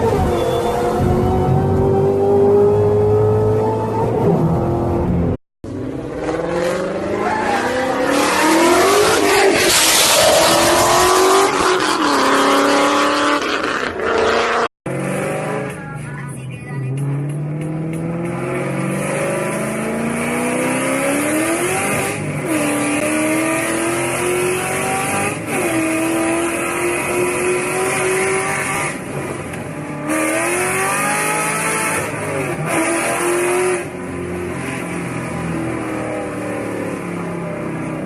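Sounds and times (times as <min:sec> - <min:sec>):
car engine revving: 0:16.9 - 0:38.0.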